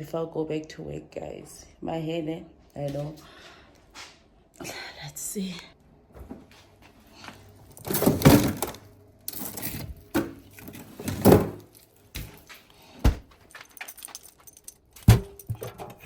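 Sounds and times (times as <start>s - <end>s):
objects clattering: 7.7s - 16.0s.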